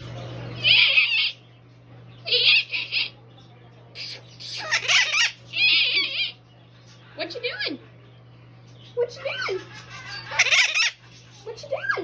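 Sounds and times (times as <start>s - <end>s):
parrot calling: 4.0s - 6.4s, 9.1s - 12.0s.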